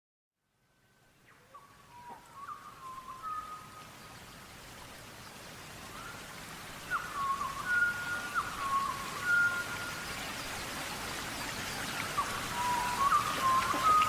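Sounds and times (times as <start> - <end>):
rain hissing: 2.4 - 14.0.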